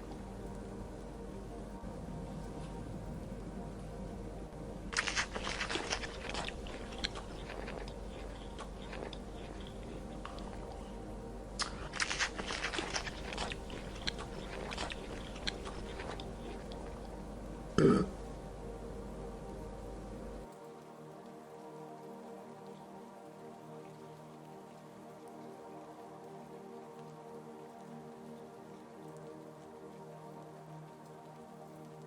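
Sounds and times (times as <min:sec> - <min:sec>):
crunchy chewing: 0:04.9 - 0:18.2.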